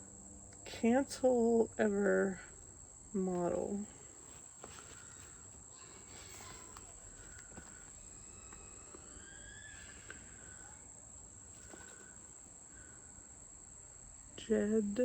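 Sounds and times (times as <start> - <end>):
crickets chirring: 0.0 - 15.0
items being handled: 3.3 - 9.0.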